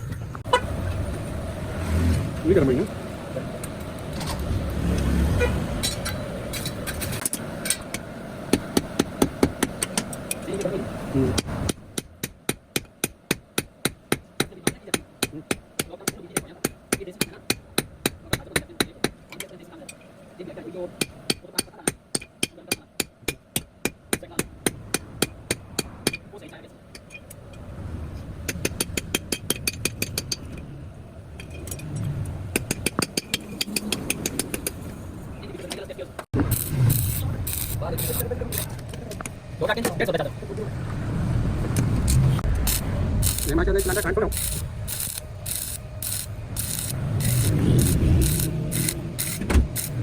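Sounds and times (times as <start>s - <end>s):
low rumble: 40.2s - 49.2s.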